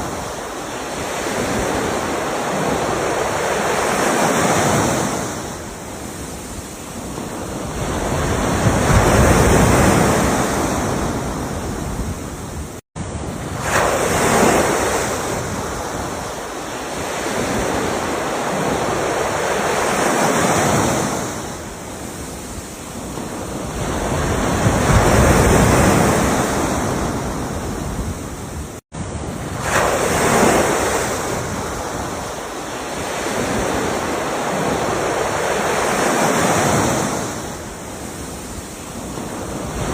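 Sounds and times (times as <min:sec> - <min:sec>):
ocean waves breaking on shore: 0:00.0 - 0:39.9.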